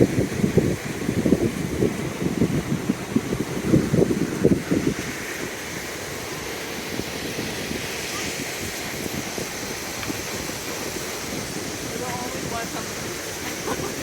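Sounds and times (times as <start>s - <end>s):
ocean surf: 0.0s - 14.0s
wind: 0.0s - 14.0s
wind buffeting microphone: 0.0s - 14.0s.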